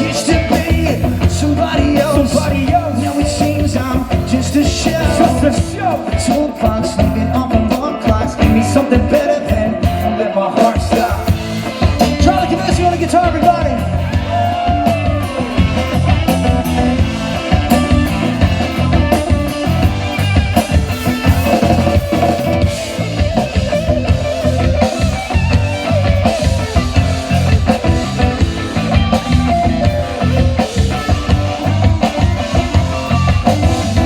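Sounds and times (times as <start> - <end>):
bass guitar: 0.0 - 34.0
steady drum beat: 0.0 - 34.0
electric guitar solo: 9.7 - 34.0.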